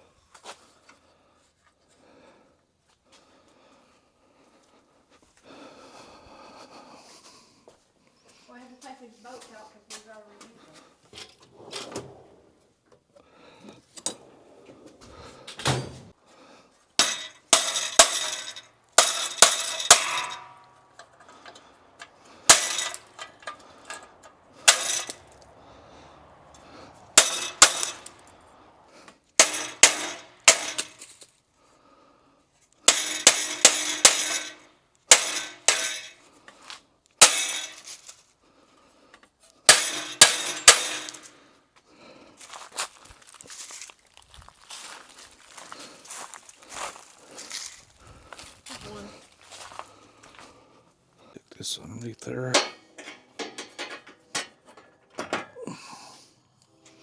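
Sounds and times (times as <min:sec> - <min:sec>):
metal tools clanking: 0:17.0 - 0:31.2, 0:32.9 - 0:36.3, 0:37.2 - 0:38.2, 0:39.7 - 0:41.4, 0:52.2 - 0:55.9.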